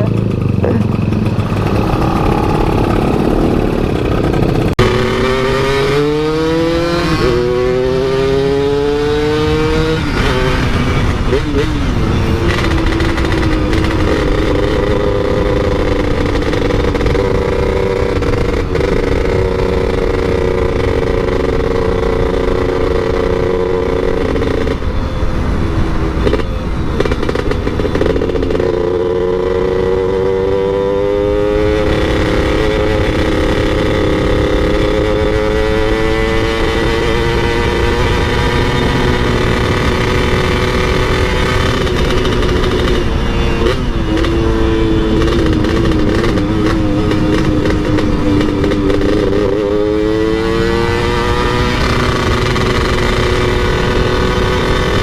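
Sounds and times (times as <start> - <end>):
motorcycle engine running: 0.0 - 55.0
wind noise: 0.0 - 55.0.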